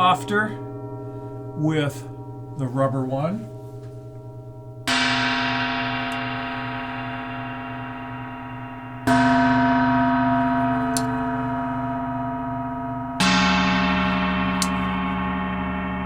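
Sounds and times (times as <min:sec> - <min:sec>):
gong struck with mallet: 0:04.1 - 0:16.0.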